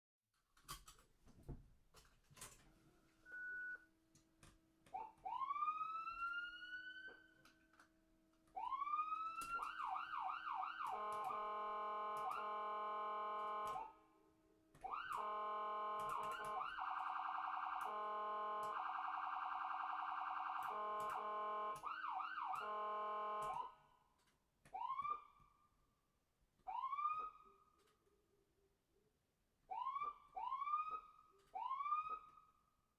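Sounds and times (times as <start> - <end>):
ambulance siren: 4.9 - 7.7, 8.5 - 14.2, 14.8 - 24.0, 24.7 - 25.4, 26.7 - 27.7, 29.7 - 32.6.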